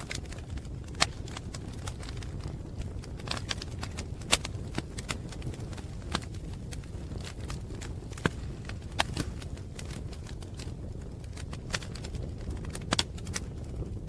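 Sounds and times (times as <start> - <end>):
wood fire crackling: 0.0 - 14.0.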